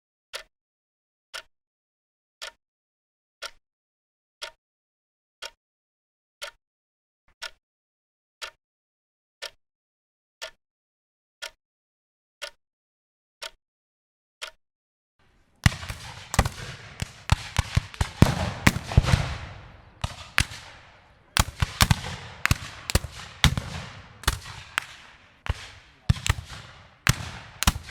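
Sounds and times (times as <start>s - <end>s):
clock ticking: 15.5s - 27.9s
fireworks bangs and crackle: 15.6s - 27.9s.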